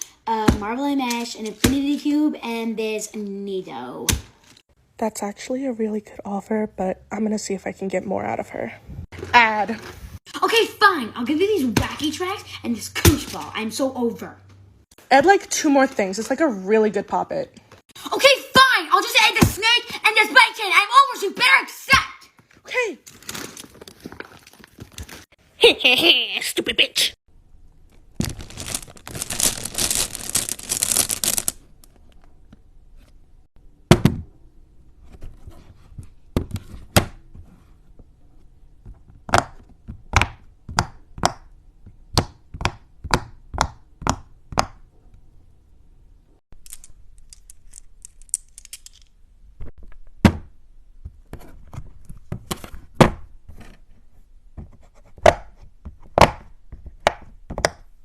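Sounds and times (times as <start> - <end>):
dense crackling rustle: 27.9 - 32.2.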